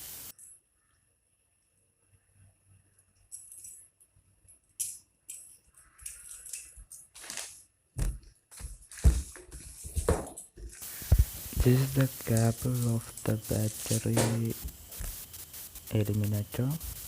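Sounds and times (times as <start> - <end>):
small accessories rattling and clinking: 3.1 - 7.6.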